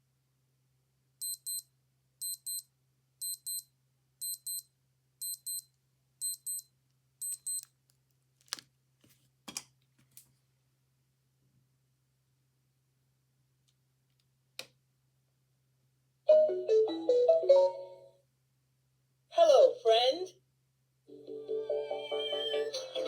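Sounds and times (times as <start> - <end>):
digital watch alarm beeping: 1.2 - 7.7.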